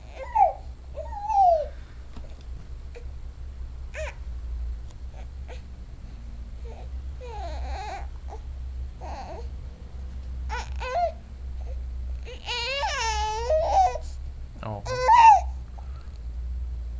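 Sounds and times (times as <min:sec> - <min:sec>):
baby whining and fussing: 0:00.0 - 0:01.8, 0:03.9 - 0:04.2, 0:05.1 - 0:05.7, 0:06.6 - 0:09.6, 0:10.5 - 0:14.2, 0:14.8 - 0:15.6.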